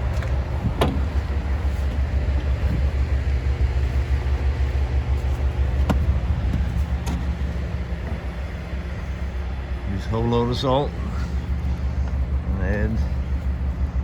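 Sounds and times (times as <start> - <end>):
diesel truck engine rumbling: 0.0 - 14.0.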